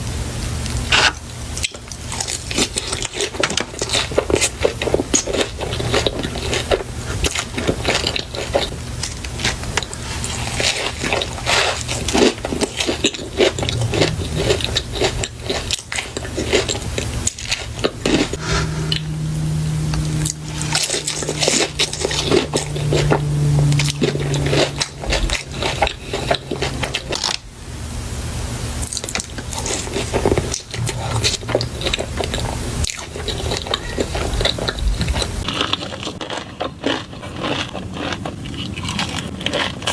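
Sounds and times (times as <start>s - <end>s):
crunching bites and wet chewing: 0.7s - 18.4s, 20.7s - 27.4s, 28.8s - 39.9s
low steady hum: 12.5s - 35.5s.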